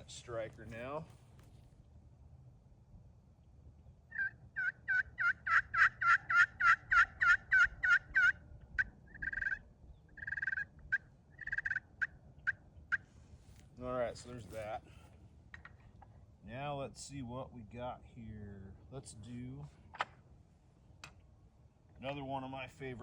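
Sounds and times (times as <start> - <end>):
turkey call clucks: 4.1 - 13.2
turkey call yelps: 4.1 - 13.2.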